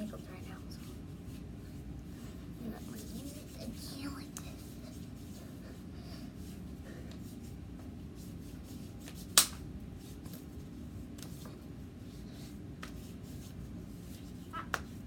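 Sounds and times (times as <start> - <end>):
low background hum: 0.0 - 15.0.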